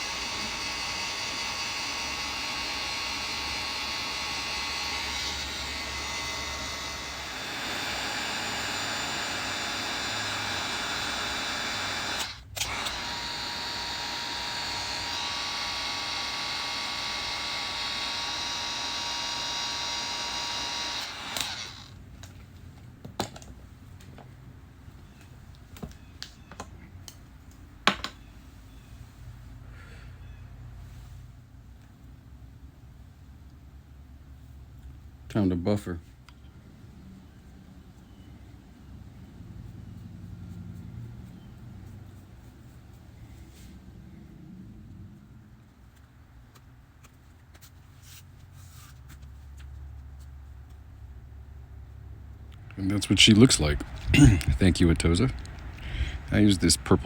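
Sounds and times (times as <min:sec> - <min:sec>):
small electric appliance whirring: 0:00.0 - 0:22.4.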